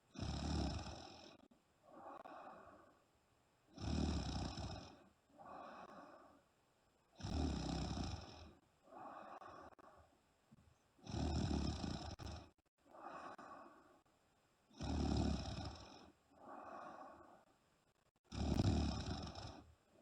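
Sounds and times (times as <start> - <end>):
woman snoring: 0.1 - 3.0, 3.7 - 6.4, 7.2 - 10.0, 11.0 - 14.0, 14.7 - 17.5, 18.2 - 19.7.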